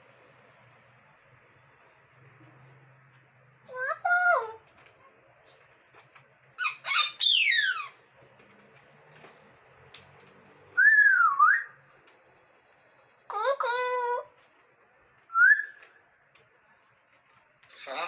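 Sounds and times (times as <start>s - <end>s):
parrot whistling: 10.8s - 11.8s, 15.3s - 15.8s.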